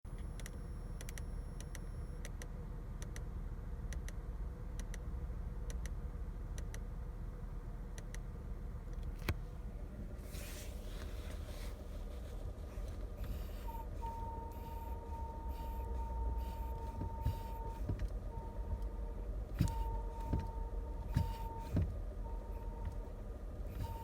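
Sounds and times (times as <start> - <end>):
car engine idling: 1.8 - 24.0
light ticks: 3.9 - 4.2, 4.8 - 5.1, 5.7 - 6.0, 6.6 - 6.9, 7.9 - 8.3
thin steady whine: 12.8 - 24.0.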